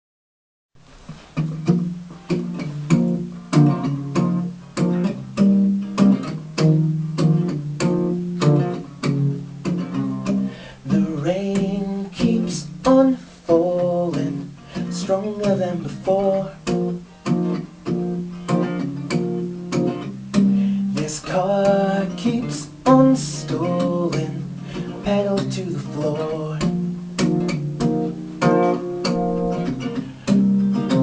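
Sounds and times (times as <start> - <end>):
acoustic guitar strumming: 1.0 - 31.0
person singing: 10.8 - 17.0, 20.4 - 26.9, 29.0 - 31.0.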